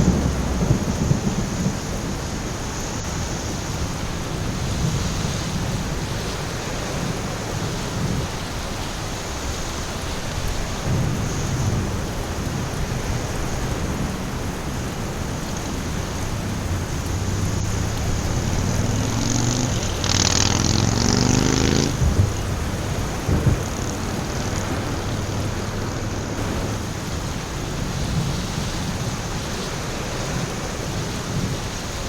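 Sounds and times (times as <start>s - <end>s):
low rumble of thunder: 0.0s - 32.0s
steady rain: 0.0s - 32.0s
loud hiss: 26.4s - 32.0s.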